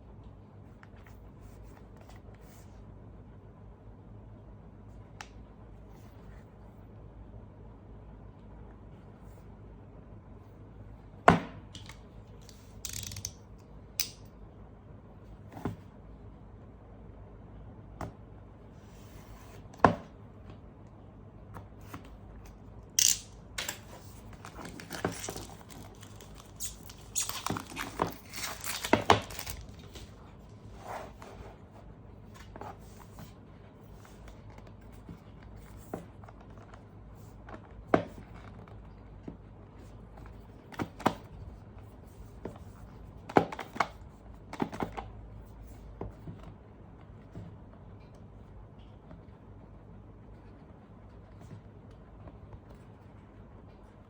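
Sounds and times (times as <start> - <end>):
rustling and scraping: 23.0 - 34.2.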